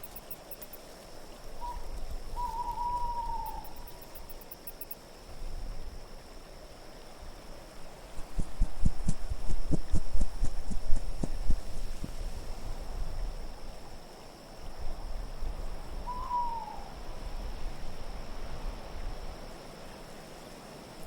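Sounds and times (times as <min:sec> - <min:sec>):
low wind: 0:00.0 - 0:21.0
owl hoot: 0:01.6 - 0:03.9, 0:16.0 - 0:17.0.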